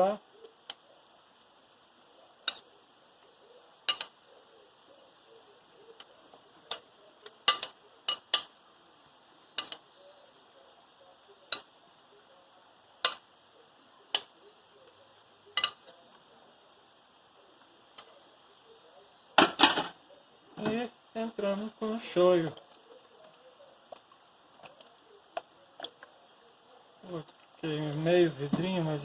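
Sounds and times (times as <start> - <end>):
utensils tapping a dish: 2.4 - 2.6, 3.8 - 4.2, 6.0 - 8.6, 9.5 - 9.9, 13.0 - 13.3, 15.5 - 16.0.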